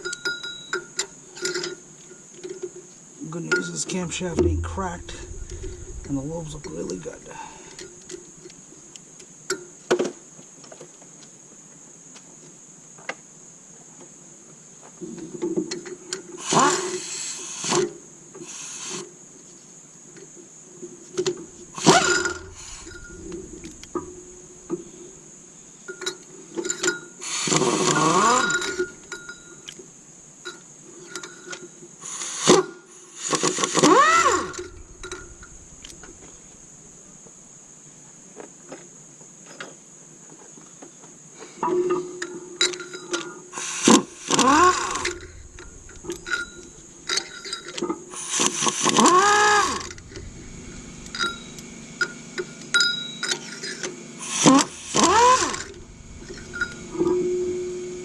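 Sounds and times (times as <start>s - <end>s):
short noisy bursts: 4.0s - 8.0s, 21.4s - 25.1s, 32.0s - 36.9s, 43.6s - 52.6s, 54.2s - 58.0s.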